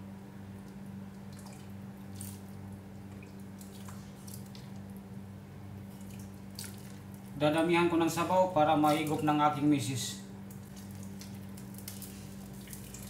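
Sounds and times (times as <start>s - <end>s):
steady low hum: 0.0s - 13.0s
broth dripping and splashing: 0.6s - 5.2s, 5.8s - 7.4s, 8.8s - 9.3s, 10.4s - 13.0s.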